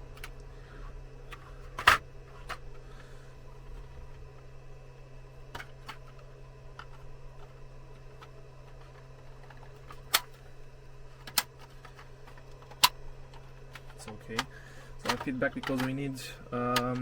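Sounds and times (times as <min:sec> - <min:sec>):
steady low hum: 0:00.0 - 0:17.0
plastic parts clicking together: 0:11.2 - 0:17.0.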